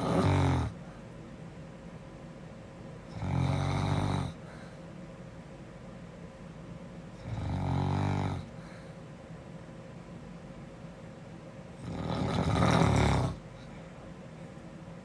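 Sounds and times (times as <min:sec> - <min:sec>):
girl snoring: 0:00.0 - 0:00.8, 0:03.1 - 0:04.5, 0:07.2 - 0:08.6, 0:11.8 - 0:13.4.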